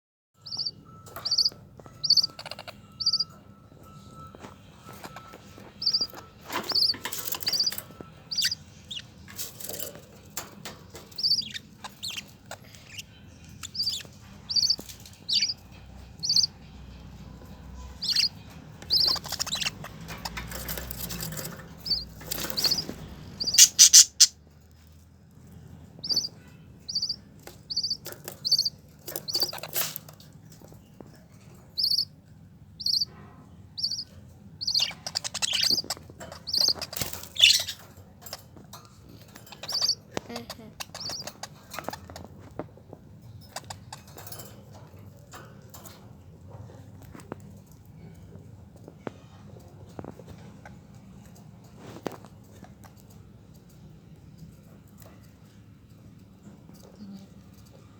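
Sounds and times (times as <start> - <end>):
bird chirping: 0.4 - 24.4, 26.0 - 30.8, 31.4 - 42.5, 43.3 - 45.2.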